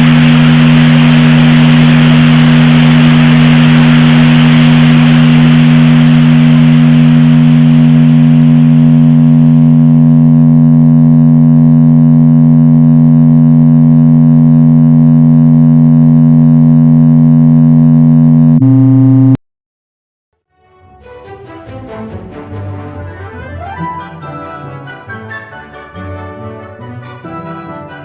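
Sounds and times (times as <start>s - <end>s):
synthesized low drone tones: 0.0s - 19.4s.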